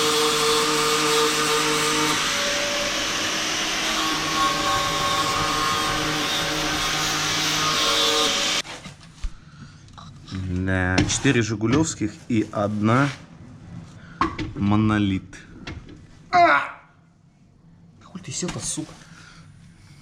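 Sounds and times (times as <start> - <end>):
angle grinder whining on steel: 0.0 - 8.6.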